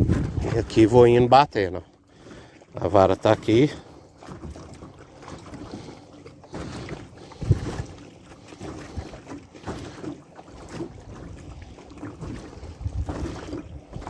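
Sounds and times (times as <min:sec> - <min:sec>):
wind on microphone: 0:00.0 - 0:01.2, 0:07.2 - 0:08.0, 0:12.2 - 0:14.0
water lapping against boat hull: 0:00.0 - 0:14.0.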